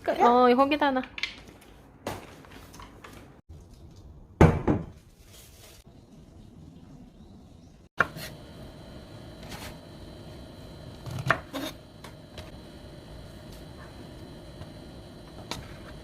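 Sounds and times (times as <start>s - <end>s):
sharp kitchen knocks: 4.4s - 5.0s.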